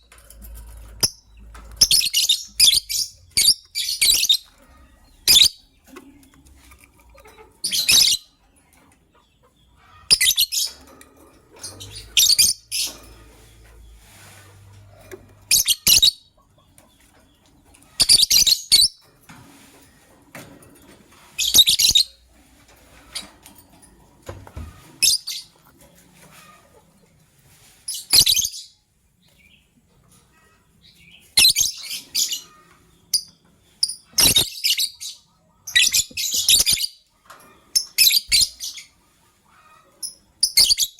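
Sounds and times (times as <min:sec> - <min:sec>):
lovebird chirping: 0:01.0 - 0:05.8, 0:07.6 - 0:08.4, 0:10.0 - 0:10.8, 0:11.6 - 0:13.0, 0:15.5 - 0:16.4, 0:18.0 - 0:19.0, 0:30.9 - 0:37.1, 0:37.8 - 0:39.0, 0:40.1 - 0:40.9.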